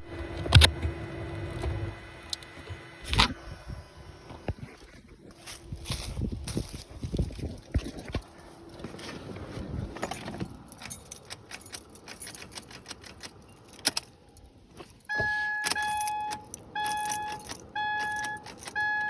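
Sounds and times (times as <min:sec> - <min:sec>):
car keys jangling: 0:09.9 - 0:19.0
car warning chime beeping: 0:15.1 - 0:19.0.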